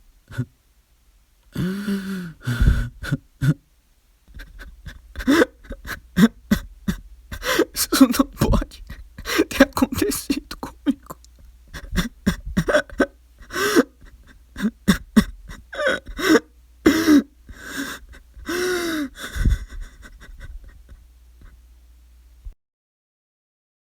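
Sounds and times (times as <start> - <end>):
man sobbing: 0.3 - 0.5, 1.5 - 3.6, 4.3 - 21.6
gasping in-breaths: 1.5 - 3.2, 7.3 - 7.8, 11.7 - 20.3.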